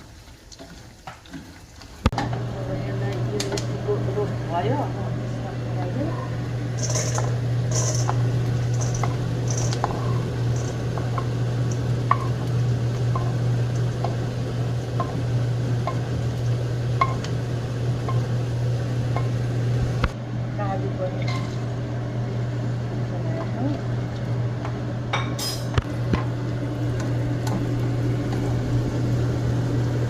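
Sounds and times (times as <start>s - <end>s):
steady low hum: 2.2s - 30.0s.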